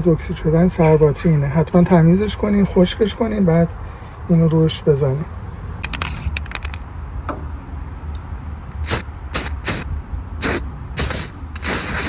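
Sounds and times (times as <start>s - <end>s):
aerosol spray hissing: 8.9s - 9.8s, 10.4s - 12.0s.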